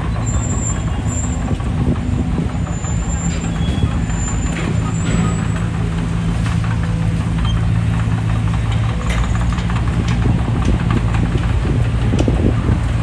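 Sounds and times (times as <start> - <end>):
diesel engine running: 0.0 - 13.0
machine clanking and clicking: 3.2 - 12.6.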